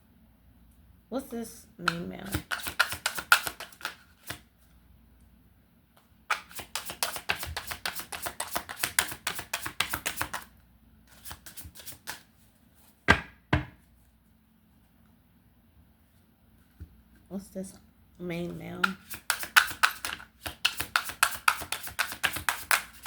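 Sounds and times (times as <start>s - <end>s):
cards being shuffled: 1.9s - 4.4s, 6.3s - 10.5s, 11.1s - 12.3s, 18.8s - 23.0s
cards tapped on table: 18.8s - 23.0s.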